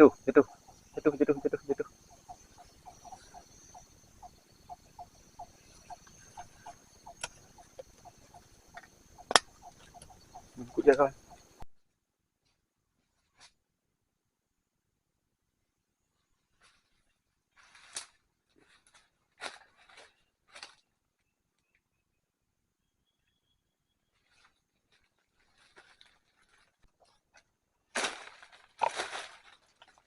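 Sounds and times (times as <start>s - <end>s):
insects droning: 0.0s - 11.6s
rustling handling noise: 24.1s - 30.0s.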